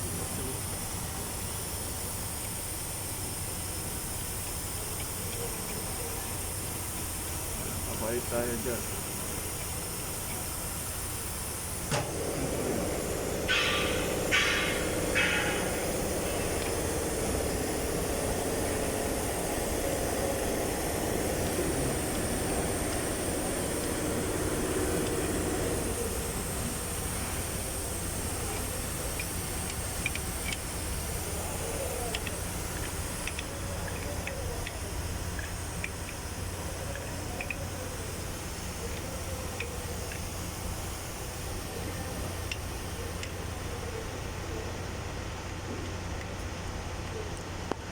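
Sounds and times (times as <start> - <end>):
short hissing bursts: 0.0 - 44.5
truck engine mechanical hum: 0.0 - 47.9
droning tone: 11.5 - 40.2.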